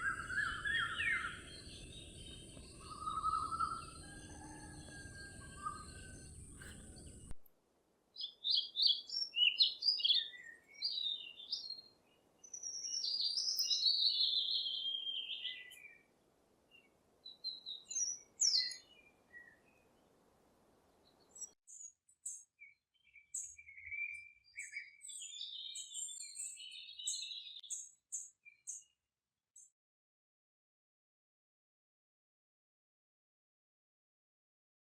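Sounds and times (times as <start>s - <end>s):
small birds chirping: 0.0s - 7.4s, 8.2s - 16.1s, 16.7s - 20.2s, 20.9s - 29.0s.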